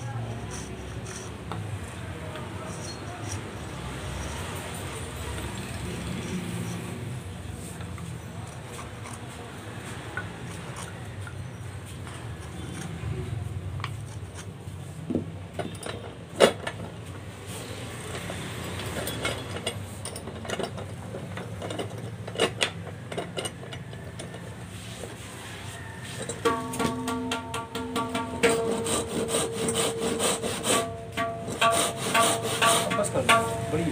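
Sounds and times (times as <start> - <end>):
clicks and knocks of handling parts: 7.5 - 25.2, 26.0 - 28.7.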